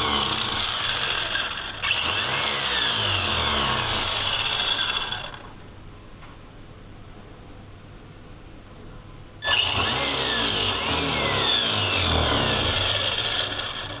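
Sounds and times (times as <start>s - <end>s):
rc car motor whine: 0.0s - 5.6s, 9.4s - 14.0s.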